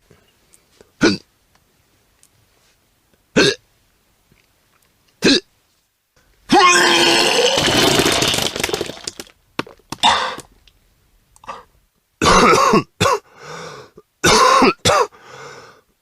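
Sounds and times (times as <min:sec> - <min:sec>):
person retching and gagging: 0:03.4 - 0:03.6, 0:05.2 - 0:05.5, 0:06.5 - 0:09.3, 0:09.9 - 0:10.5.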